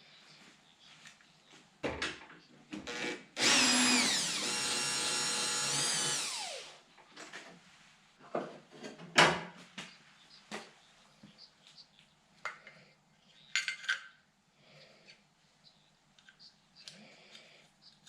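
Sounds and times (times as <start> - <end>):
cordless power drill running: 2.8 - 6.8.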